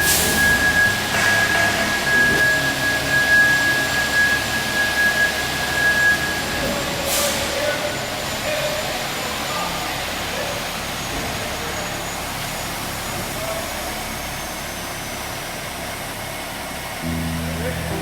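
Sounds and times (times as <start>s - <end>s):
truck engine running: 0.0s - 6.6s, 14.8s - 18.0s.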